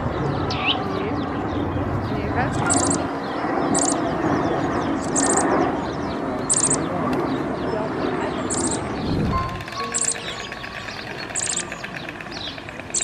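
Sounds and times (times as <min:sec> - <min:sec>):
babble of bird calls: 0:00.1 - 0:13.0
high rapid bird chirp: 0:02.6 - 0:06.9, 0:08.4 - 0:13.0.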